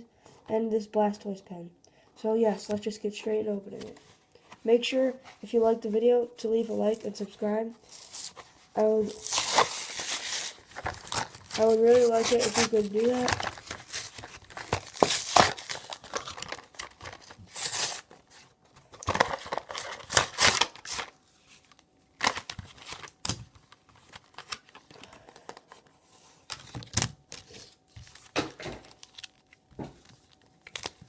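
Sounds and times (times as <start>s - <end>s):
plastic packaging tearing and crinkling: 7.8s - 31.0s.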